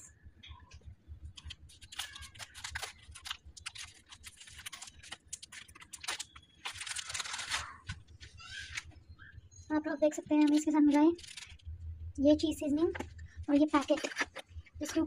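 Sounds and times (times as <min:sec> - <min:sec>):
packaging clicks and crinkles: 0:01.3 - 0:08.9, 0:10.2 - 0:11.7
packaging tearing: 0:01.4 - 0:07.8, 0:10.4 - 0:11.6.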